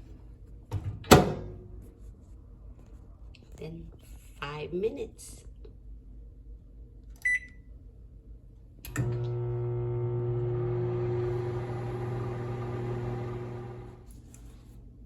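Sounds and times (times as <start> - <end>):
microwave keypad beep: 7.2 - 7.6
microwave electric hum: 8.8 - 14.1.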